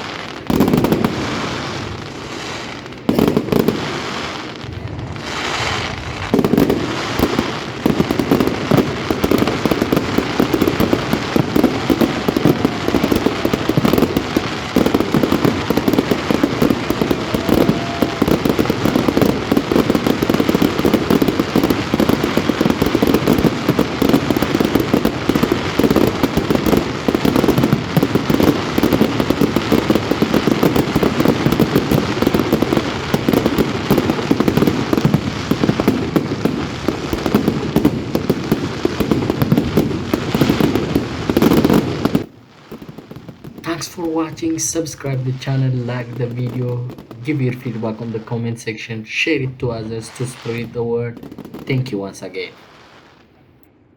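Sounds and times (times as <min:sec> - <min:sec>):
fireworks bangs and crackles: 0:00.0 - 0:53.9.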